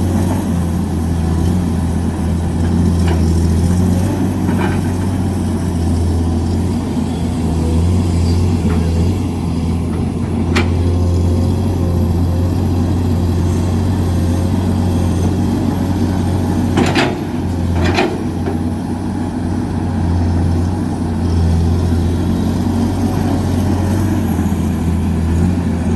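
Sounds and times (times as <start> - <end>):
diesel engine humming: 0.0 - 25.9.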